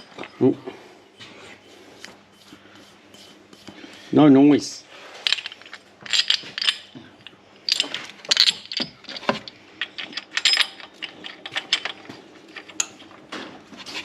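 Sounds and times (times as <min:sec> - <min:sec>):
metallic clicks and clinks: 0:05.2 - 0:13.0.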